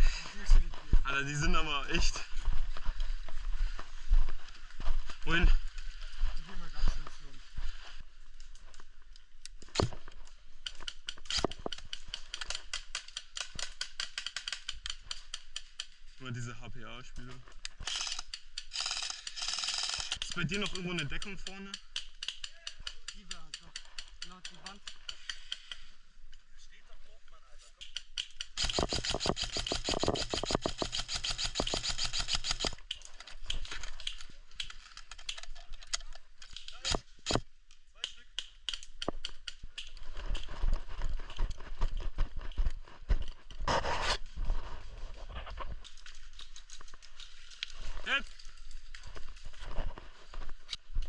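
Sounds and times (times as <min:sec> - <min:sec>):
airsoft rifle firing rapid clicks: 0:10.7 - 0:15.9, 0:17.8 - 0:25.1, 0:27.8 - 0:33.0
airsoft guns firing: 0:28.5 - 0:32.7.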